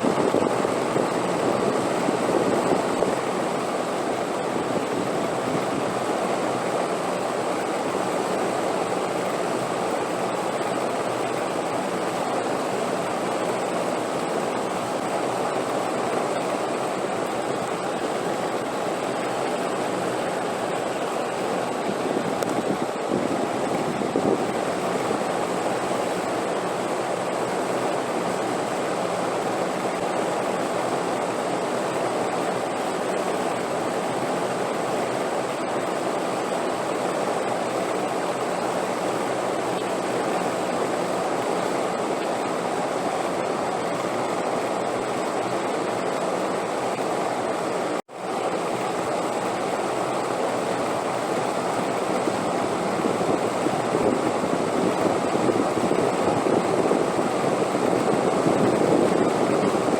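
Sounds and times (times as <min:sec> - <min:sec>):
steady wind rushing: 0:00.0 - 0:08.8, 0:16.9 - 0:27.4, 0:51.4 - 0:59.9.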